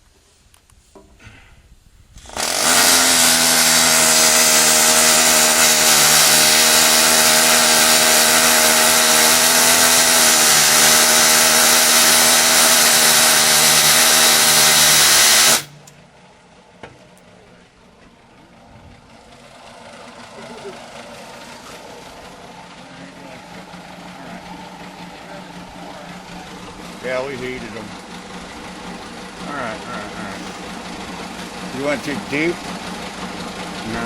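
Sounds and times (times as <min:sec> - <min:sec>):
electric drill drilling into metal: 0:02.2 - 0:15.7.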